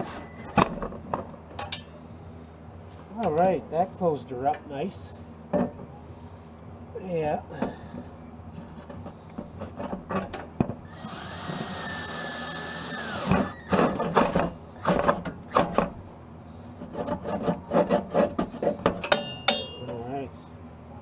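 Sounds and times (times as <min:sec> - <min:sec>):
small tool motor whirring: 0:10.8 - 0:15.0
metal tools clinking: 0:19.0 - 0:20.1.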